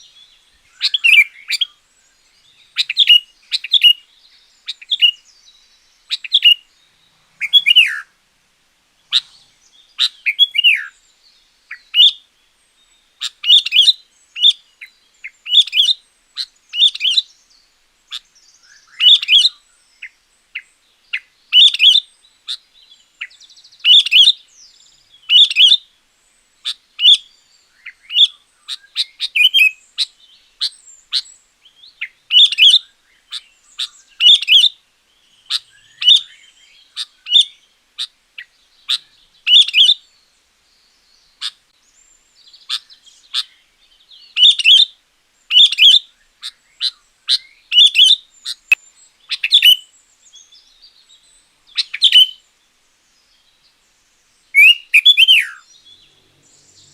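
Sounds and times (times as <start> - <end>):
bird whistled chirping: 7.4 - 8.1, 10.0 - 11.0, 13.3 - 14.6, 18.6 - 19.6, 27.8 - 29.8, 35.5 - 37.6, 38.9 - 40.0, 44.2 - 44.9, 45.5 - 50.5, 51.7 - 52.4, 54.5 - 56.9.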